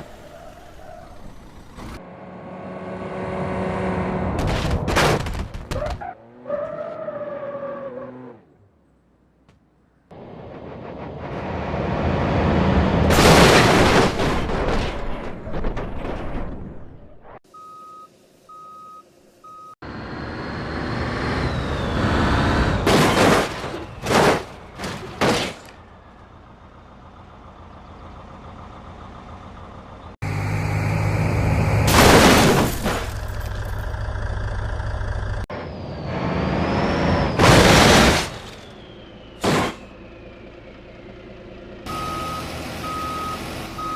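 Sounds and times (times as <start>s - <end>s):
engine running: 0.0s - 5.5s, 18.0s - 43.9s
short even beeps: 17.5s - 19.8s.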